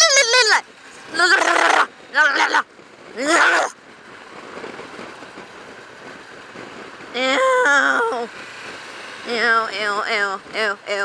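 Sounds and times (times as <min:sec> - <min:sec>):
wind and road noise in helmet: 0:00.0 - 0:11.0
woman's drawn-out vocal sound: 0:07.2 - 0:08.3.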